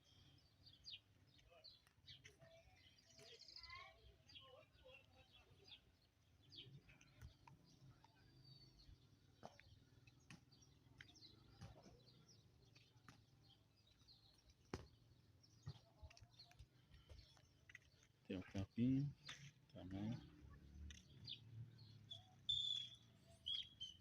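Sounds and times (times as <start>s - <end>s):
faint bird chirps: 20.1s - 24.0s.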